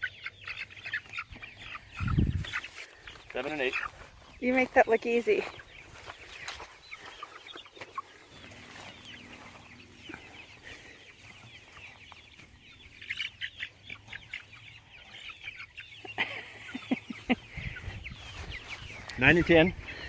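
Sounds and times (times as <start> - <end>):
chickens peeping and clucking: 0.0 - 20.0.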